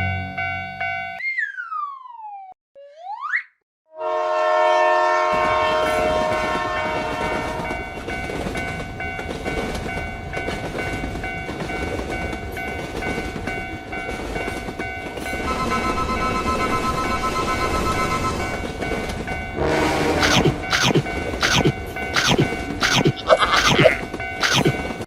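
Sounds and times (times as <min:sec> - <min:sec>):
crossing signal bell tones: 0:00.0 - 0:01.2, 0:05.5 - 0:25.0
train horn: 0:03.9 - 0:07.8, 0:19.6 - 0:20.6
train rumbling with rail clatter: 0:05.4 - 0:25.0.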